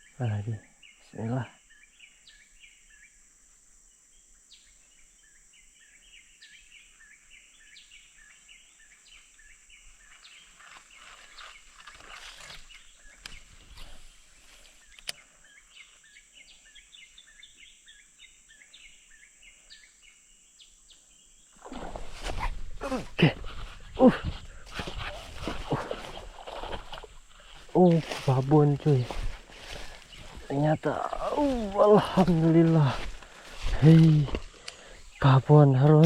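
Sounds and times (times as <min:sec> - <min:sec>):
rustling noise: 0:21.8 - 0:30.6.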